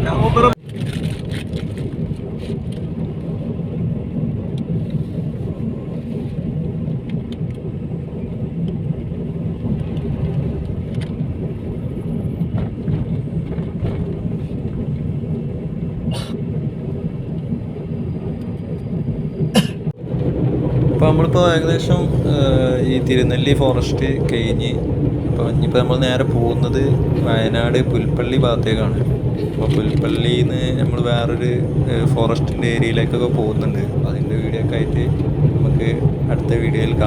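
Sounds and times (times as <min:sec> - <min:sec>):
car engine rumble from inside: 0:00.0 - 0:00.6, 0:01.2 - 0:37.0
tyres on the road: 0:00.0 - 0:37.0.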